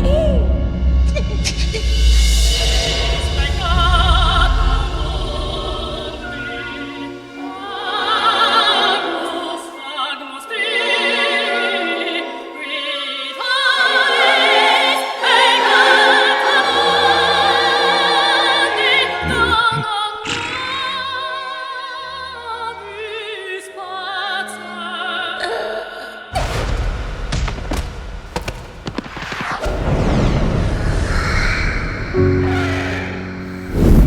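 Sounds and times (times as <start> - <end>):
operatic singing with vibrato: 3.0 - 26.3.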